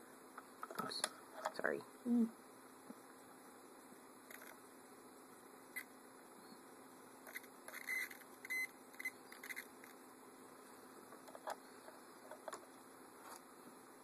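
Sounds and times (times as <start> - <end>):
multimeter high beeps: 7.8 - 9.6.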